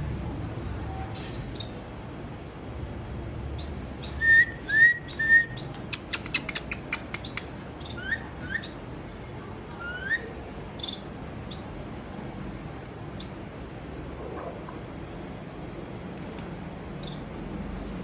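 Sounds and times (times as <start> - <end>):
sharp clicks: 5.7 - 7.4.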